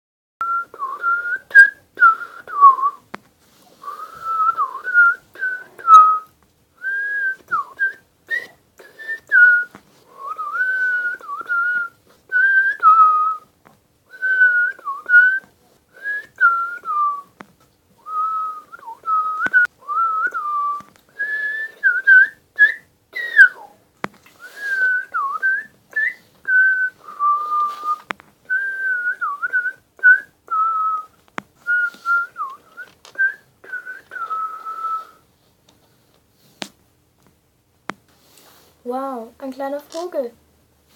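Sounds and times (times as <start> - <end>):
person whistling a tune: 0.4 - 3.0, 3.8 - 13.5, 14.1 - 17.3, 18.0 - 23.8, 24.4 - 35.2.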